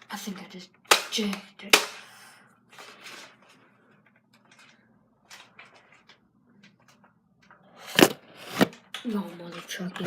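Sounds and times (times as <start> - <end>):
soft handling clicks and rustles: 2.7 - 7.6.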